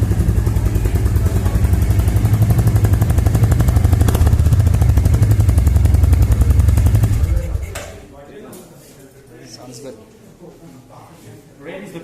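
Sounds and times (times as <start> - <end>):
motorcycle engine idling: 0.0 - 8.2.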